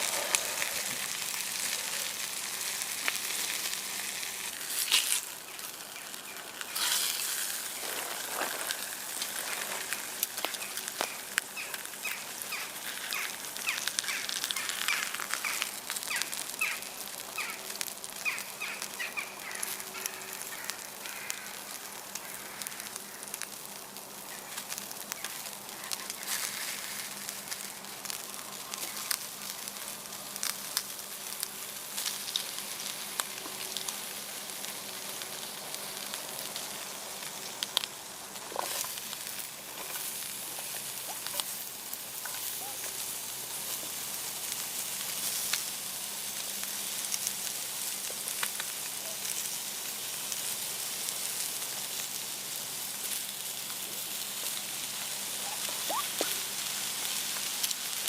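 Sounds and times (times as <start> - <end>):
campfire crackles: 0.0 - 58.0
steak sizzling in a pan: 0.0 - 58.0
bird calling repeated notes: 18.2 - 21.3, 55.4 - 56.4.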